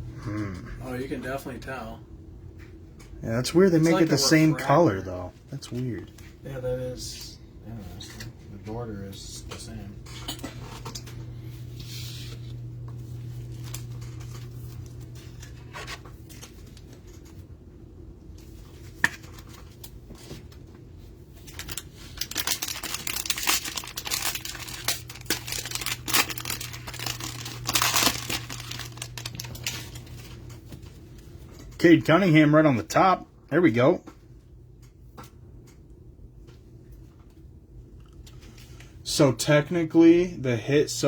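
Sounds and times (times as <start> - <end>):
steady low hum: 0.0 - 41.0
card packaging tearing and crinkling: 21.4 - 30.4.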